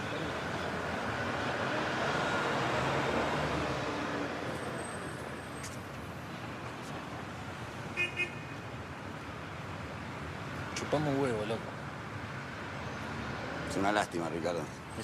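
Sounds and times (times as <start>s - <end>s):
vehicle passing: 0.0s - 5.1s
traffic hum: 0.0s - 15.0s.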